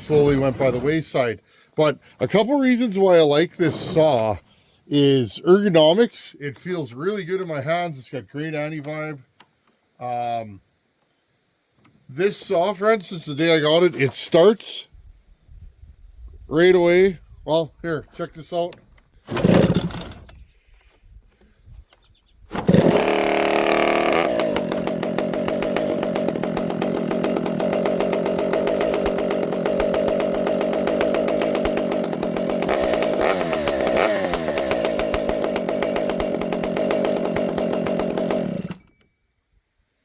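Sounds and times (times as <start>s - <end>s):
chainsaw running and idling: 0.0s - 1.0s, 19.3s - 20.2s, 22.5s - 39.0s.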